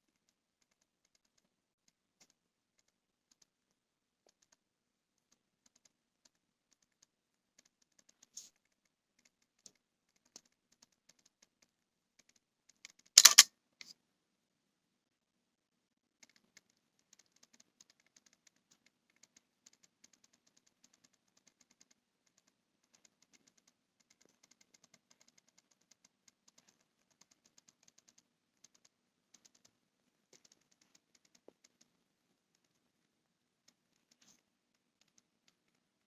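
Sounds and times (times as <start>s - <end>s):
camera lens autofocus clicking: 13.2s - 13.4s.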